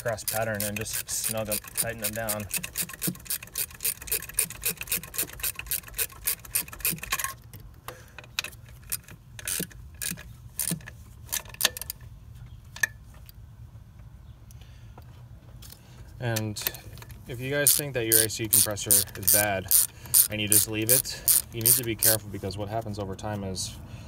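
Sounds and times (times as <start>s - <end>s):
ratchet wrench clicking: 0.0s - 7.4s, 8.2s - 12.0s, 16.4s - 22.2s.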